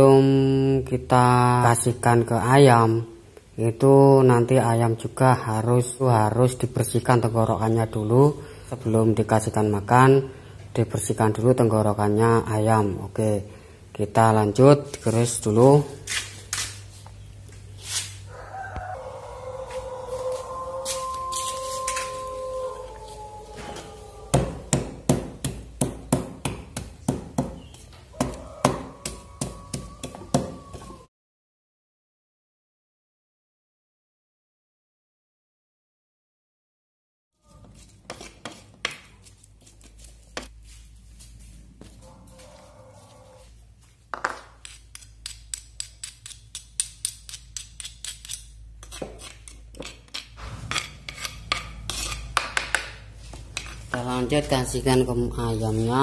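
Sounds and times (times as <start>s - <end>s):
pestle pounding in mortar: 24.3s - 31.0s, 48.9s - 54.0s.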